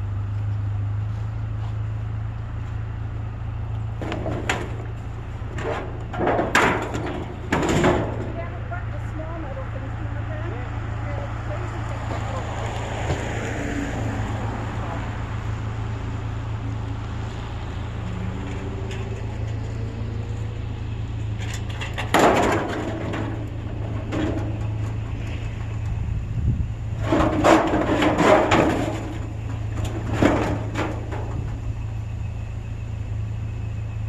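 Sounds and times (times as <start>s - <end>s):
vehicle idling hum: 0.0s - 34.0s
scrap metal banging and clattering: 3.9s - 9.4s, 17.4s - 20.5s, 21.1s - 26.1s, 26.9s - 32.0s.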